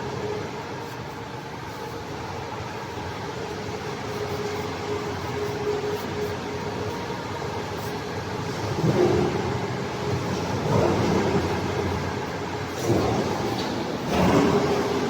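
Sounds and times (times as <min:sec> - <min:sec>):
machine hum with faint whine: 0:00.0 - 0:15.0.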